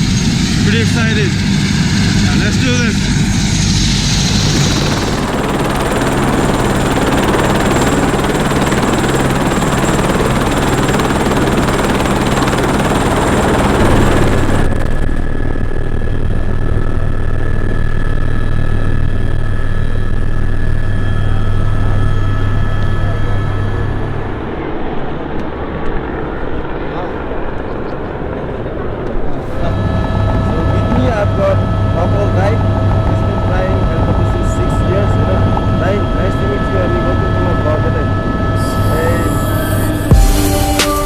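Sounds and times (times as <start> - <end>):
helicopter rotor and engine: 0.0 - 41.0
faint whining tones: 27.7 - 40.1.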